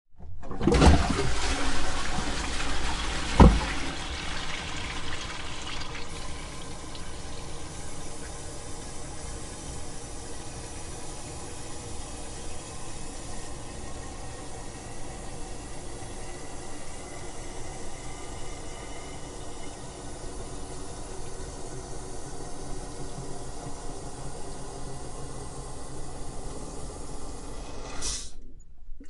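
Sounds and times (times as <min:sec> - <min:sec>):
toilet flushing: 0:00.2 - 0:28.4
toilet tank refilling hiss: 0:00.5 - 0:28.4
low thump: 0:03.4 - 0:03.8.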